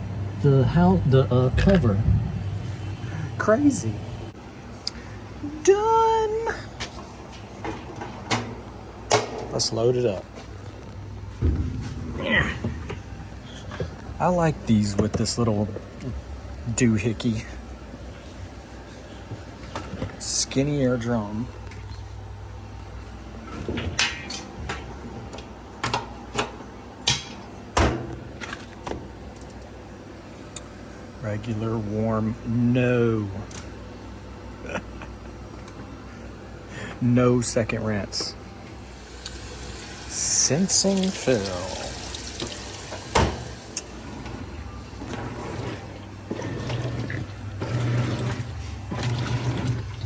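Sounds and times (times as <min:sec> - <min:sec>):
low steady hum: 0:00.0 - 0:50.0
washer clattering and knocking: 0:42.4 - 0:44.4, 0:45.0 - 0:50.0.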